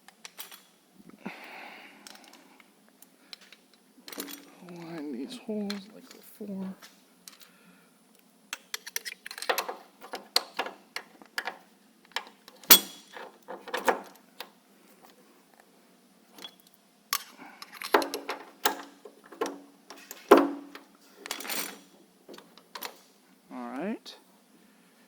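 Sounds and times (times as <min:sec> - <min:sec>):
hard parts clicking and clinking: 0:00.1 - 0:00.8, 0:03.3 - 0:07.5, 0:08.5 - 0:15.2, 0:16.4 - 0:23.2.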